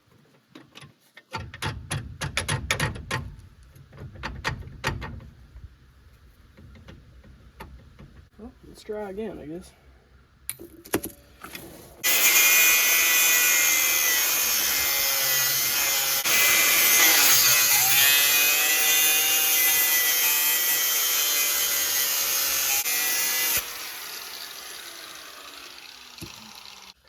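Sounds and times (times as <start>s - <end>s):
angle grinder cutting steel: 12.0s - 27.0s
motor winding down whine: 22.7s - 27.0s.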